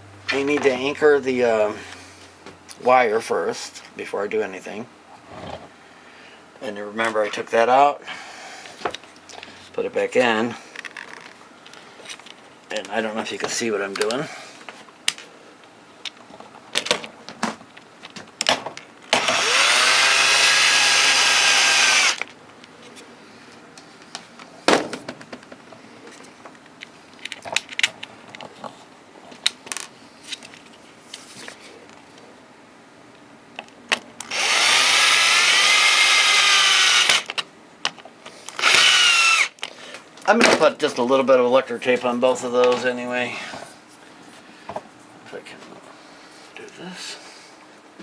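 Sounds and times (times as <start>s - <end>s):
power drill whining: 19.2s - 22.3s, 34.2s - 37.4s, 38.5s - 39.6s.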